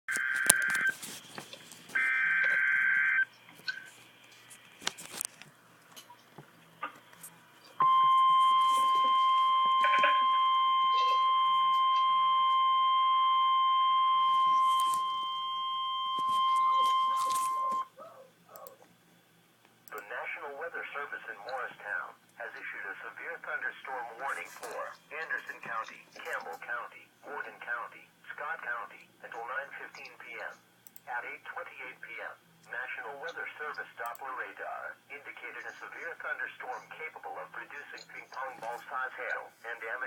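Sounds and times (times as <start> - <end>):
steady warning alarm tone: 2.0 - 3.3, 7.8 - 17.9.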